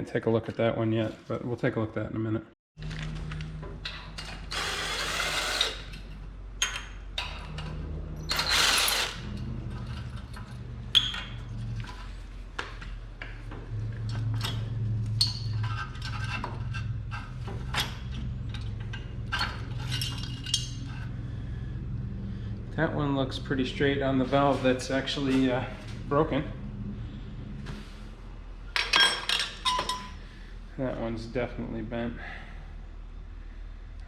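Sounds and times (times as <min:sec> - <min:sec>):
steady low hum: 0:02.8 - 0:34.0
loud scraping bursts: 0:08.3 - 0:10.1
metal tools clinking and knocking: 0:14.0 - 0:21.1, 0:28.8 - 0:30.2.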